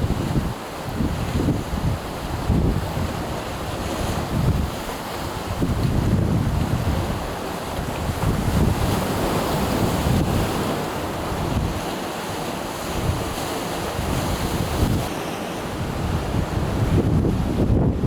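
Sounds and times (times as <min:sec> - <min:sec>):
wind buffeting microphone: 0:00.0 - 0:12.0, 0:12.9 - 0:18.0
sea surf washing on shore: 0:00.0 - 0:18.0.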